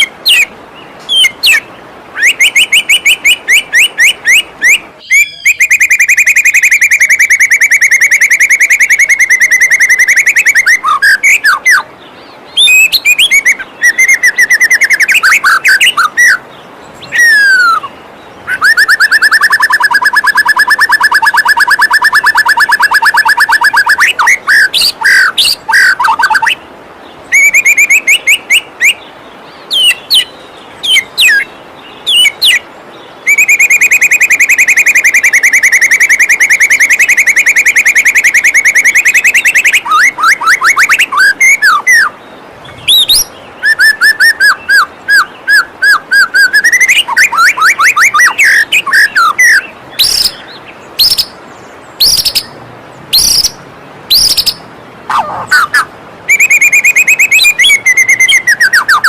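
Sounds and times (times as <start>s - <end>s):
bird song with rattling trills: 27.2s - 52.6s, 53.2s - 54.6s.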